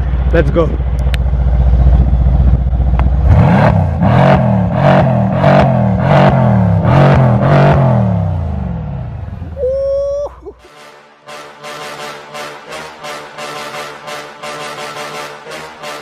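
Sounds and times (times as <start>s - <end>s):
car engine revving: 0.0s - 9.5s
car engine idling: 0.0s - 9.6s.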